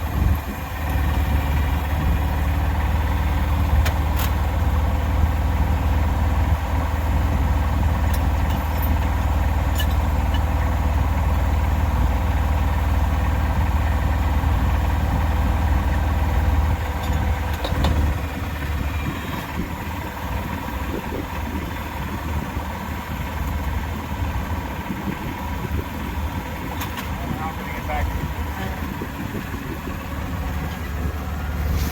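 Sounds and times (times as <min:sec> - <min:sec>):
engine idling hum: 0:00.0 - 0:31.9.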